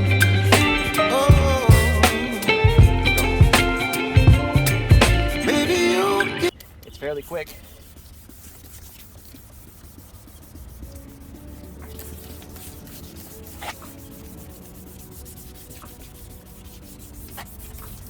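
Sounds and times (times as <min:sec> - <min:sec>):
sandpaper rubbing on plastic: 0:07.4 - 0:18.0.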